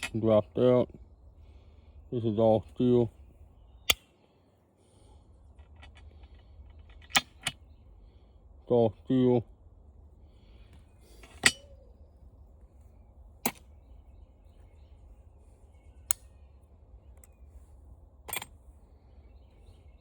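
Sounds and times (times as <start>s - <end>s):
small parts clacking: 5.6s - 7.6s, 11.1s - 11.7s, 13.4s - 13.7s, 18.2s - 18.6s.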